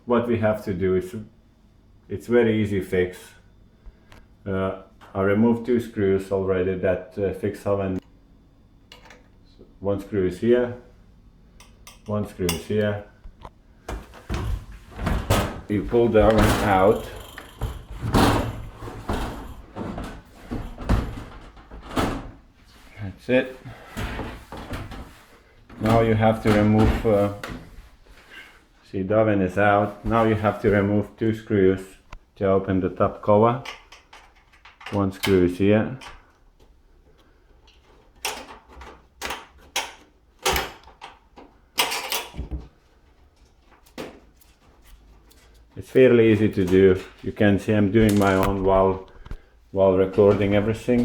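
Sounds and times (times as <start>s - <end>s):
oven knocking: 13.9s - 22.4s.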